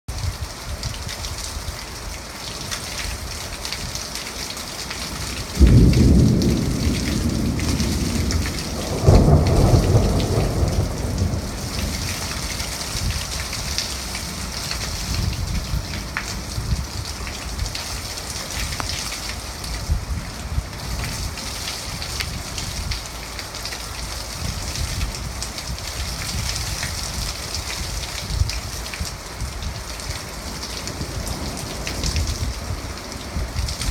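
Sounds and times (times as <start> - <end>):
steady rain falling: 0.1 - 33.9
thunder cracks rumbling: 5.3 - 18.1, 30.4 - 33.9.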